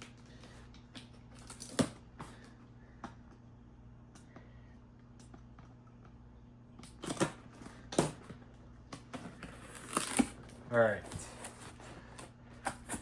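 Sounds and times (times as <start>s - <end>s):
cardboard crackling rustles: 9.3s - 13.0s.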